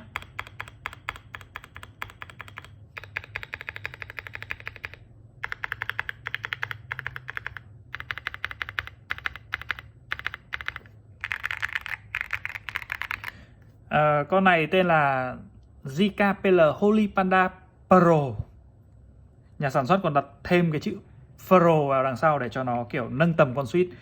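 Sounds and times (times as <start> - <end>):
fast mechanical keyboard typing: 0.0 - 13.4.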